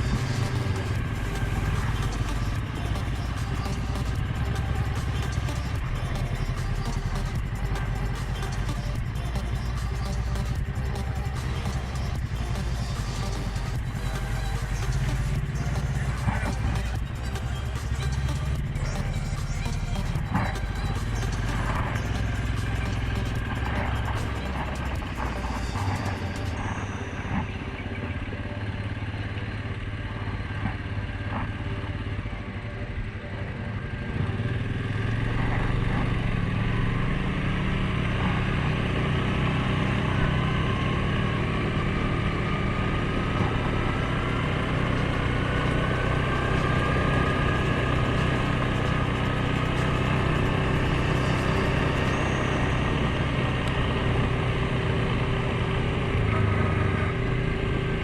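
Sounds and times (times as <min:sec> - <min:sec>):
atv engine running: 0:00.0 - 0:58.0.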